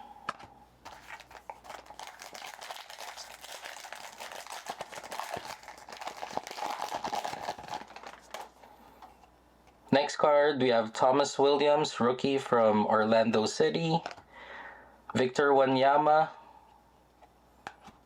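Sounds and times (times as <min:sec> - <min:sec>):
trading cards rustling: 0:00.4 - 0:09.2.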